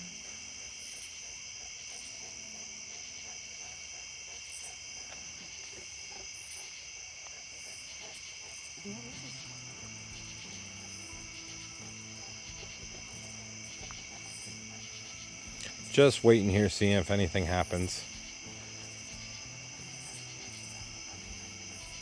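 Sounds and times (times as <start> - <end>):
crickets trilling: 0.0 - 22.0
low stepped musical tones: 8.8 - 22.0.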